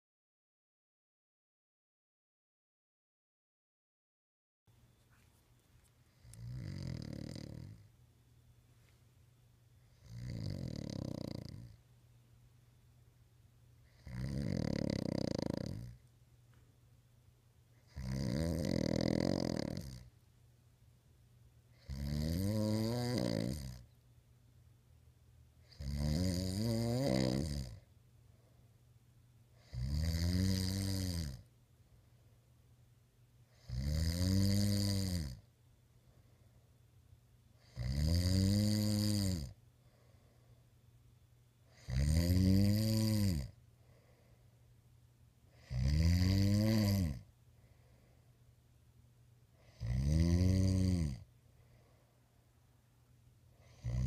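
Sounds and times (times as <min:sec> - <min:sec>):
man snoring: 0:06.2 - 0:07.8, 0:09.9 - 0:11.8, 0:13.9 - 0:16.0, 0:17.8 - 0:20.1, 0:21.8 - 0:23.8, 0:25.6 - 0:27.8, 0:29.6 - 0:31.4, 0:33.5 - 0:35.4, 0:37.6 - 0:39.6, 0:41.7 - 0:43.6, 0:45.6 - 0:47.3, 0:49.6 - 0:51.3, 0:53.6 - 0:54.0.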